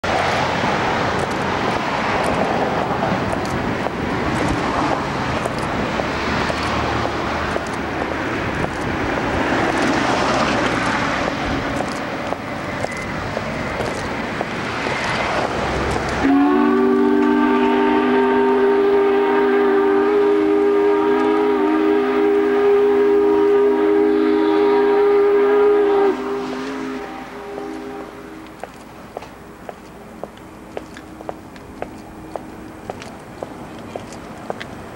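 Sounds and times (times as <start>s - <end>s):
steady rushing noise: 0.0s - 16.3s
factory steam whistle chord: 16.2s - 28.6s.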